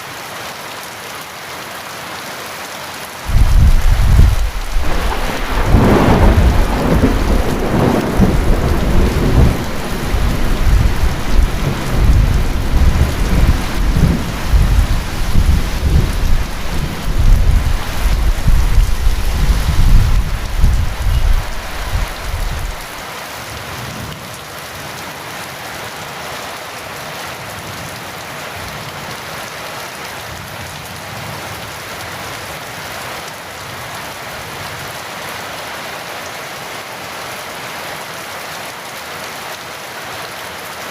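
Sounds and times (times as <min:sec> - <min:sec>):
heavy rain falling: 0:00.0 - 0:40.9
thunder rumbling: 0:03.3 - 0:23.0.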